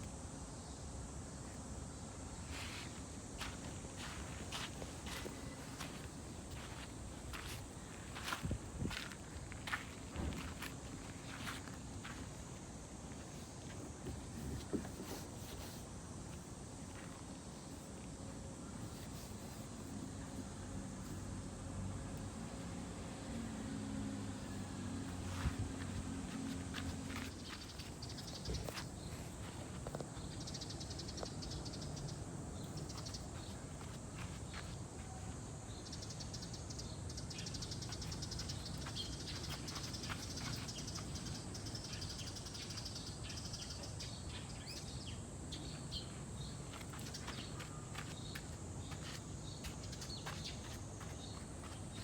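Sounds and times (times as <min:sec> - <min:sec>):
cicadas singing: 0:00.0 - 0:52.0.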